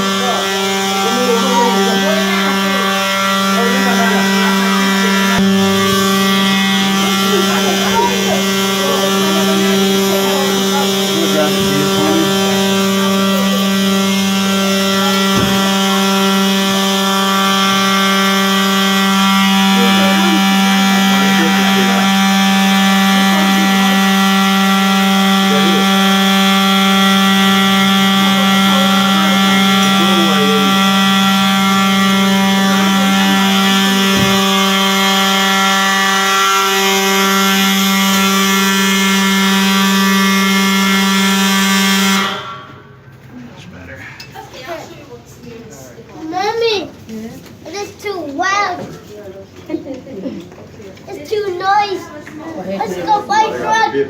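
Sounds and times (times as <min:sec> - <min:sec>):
fire alarm buzzing: 0:00.0 - 0:43.2.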